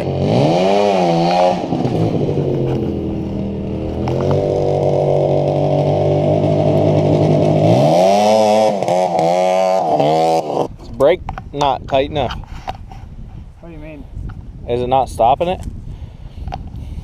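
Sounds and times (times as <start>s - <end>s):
two-stroke engine revving: 0.0s - 10.7s.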